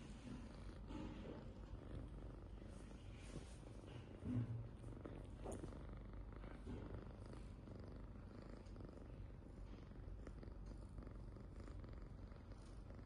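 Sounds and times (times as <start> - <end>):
cat snoring: 4.2 - 13.0.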